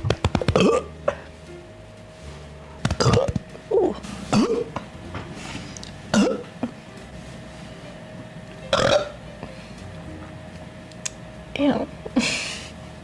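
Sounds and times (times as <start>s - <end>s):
woman burping: 0.6s - 0.9s, 6.1s - 6.5s, 8.7s - 9.2s.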